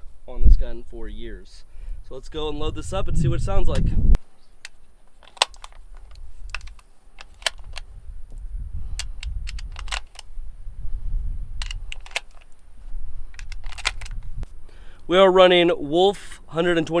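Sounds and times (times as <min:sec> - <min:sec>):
low handling rumble: 0:02.0 - 0:04.2
cartridges clicking into magazine: 0:04.6 - 0:05.8, 0:06.5 - 0:07.9, 0:09.0 - 0:10.3, 0:11.6 - 0:12.6, 0:13.4 - 0:14.2.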